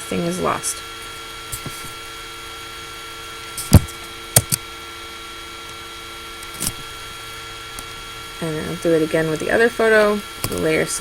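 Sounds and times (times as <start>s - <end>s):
laptop cooling fan whirring: 0.0s - 11.0s
sharp clicks: 3.7s - 4.6s.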